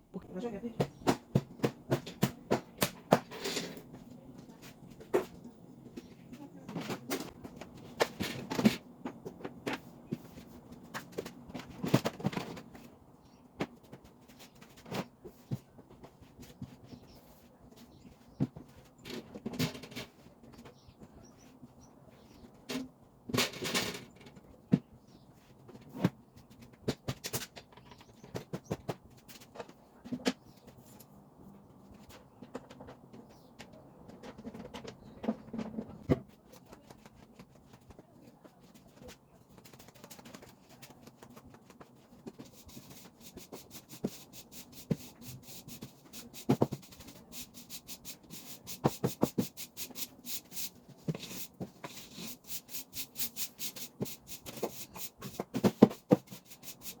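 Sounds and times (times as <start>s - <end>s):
household items knocking and clicking: 0.7s - 4.0s, 45.8s - 47.1s, 48.3s - 56.6s.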